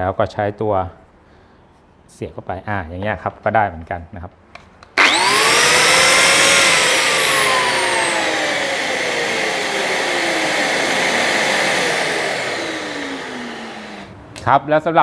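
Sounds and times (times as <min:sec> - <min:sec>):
electric motors winding down: 0:05.0 - 0:14.2.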